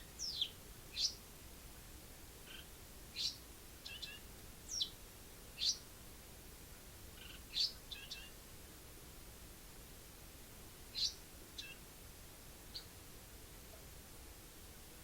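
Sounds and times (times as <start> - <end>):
sparrow chirping: 0.0 - 1.2, 2.5 - 5.0, 5.6 - 5.8, 7.2 - 8.4, 10.9 - 11.8, 12.7 - 13.0.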